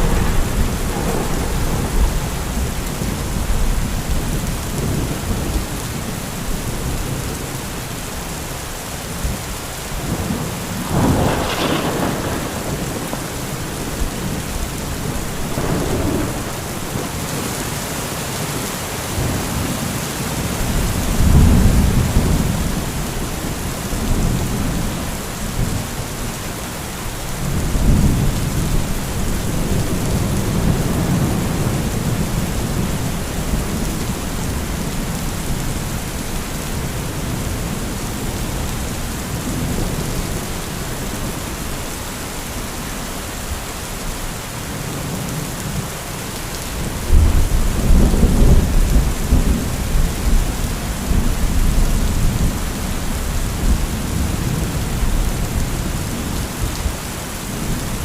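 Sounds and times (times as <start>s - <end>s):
sharp thunderclap: 0.0s - 3.6s, 10.2s - 17.4s
rolling thunder: 0.0s - 5.6s, 10.1s - 17.8s, 20.6s - 25.9s, 46.8s - 56.7s
steady rain: 0.0s - 58.0s.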